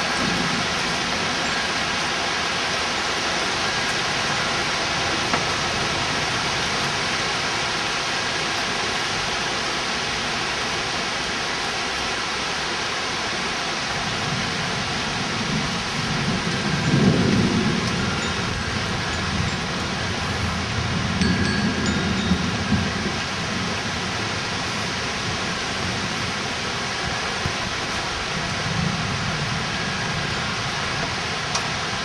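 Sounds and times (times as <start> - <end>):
thunder rumbling: 0.0 - 7.0, 14.0 - 32.0
heavy rain falling: 0.0 - 32.0.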